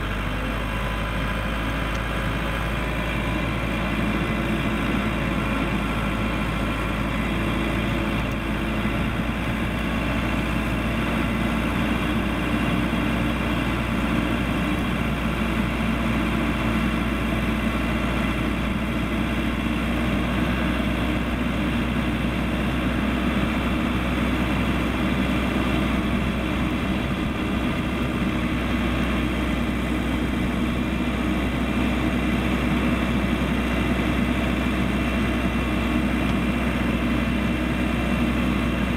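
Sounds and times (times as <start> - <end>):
diesel engine running: 0.0 - 38.9.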